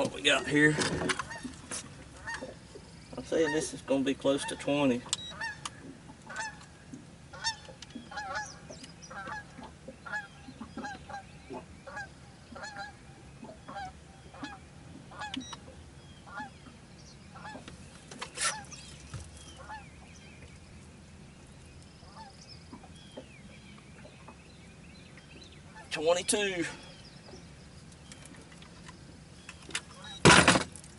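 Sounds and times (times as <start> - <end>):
geese honking: 5.3 - 5.6, 6.2 - 6.6, 7.3 - 11.2, 11.9 - 13.0.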